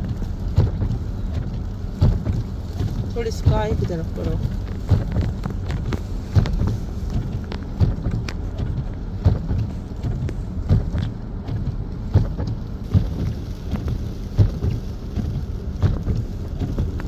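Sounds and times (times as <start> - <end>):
wind rumbling on microphone: 0.0 - 17.0.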